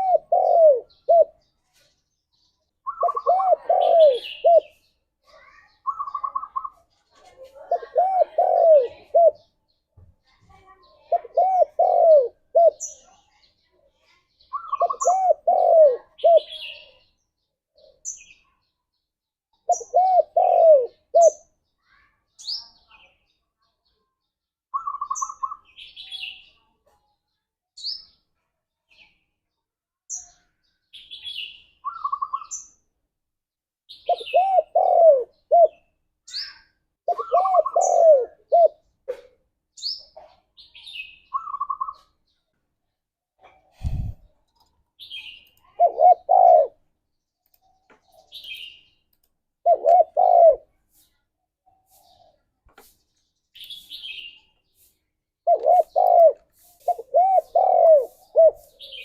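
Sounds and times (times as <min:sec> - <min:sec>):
doves cooing: 0:00.0 - 0:01.4, 0:02.9 - 0:04.7, 0:07.6 - 0:09.4, 0:11.2 - 0:12.8, 0:14.8 - 0:16.5, 0:19.7 - 0:21.3, 0:34.1 - 0:35.8, 0:37.1 - 0:39.2, 0:45.8 - 0:46.8, 0:49.6 - 0:50.7, 0:55.4 - 0:58.7
small birds trilling and chirping: 0:00.0 - 0:33.2, 0:33.9 - 0:59.0.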